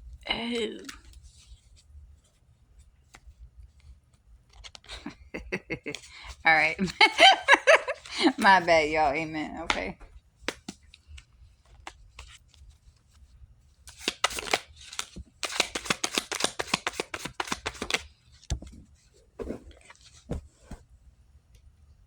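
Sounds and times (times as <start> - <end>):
cards being shuffled: 4.5 - 6.4, 9.6 - 13.2, 13.9 - 20.9.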